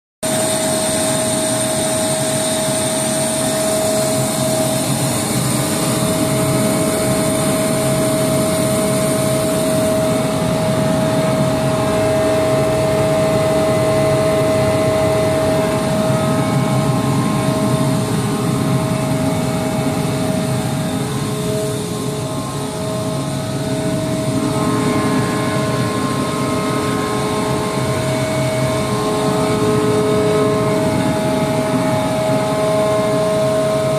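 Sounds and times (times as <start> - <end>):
air compressor drone and whine: 0.2 - 33.9.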